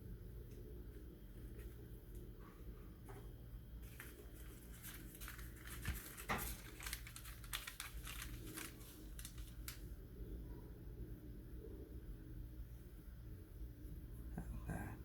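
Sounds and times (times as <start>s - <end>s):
light crinkling: 3.0s - 10.0s.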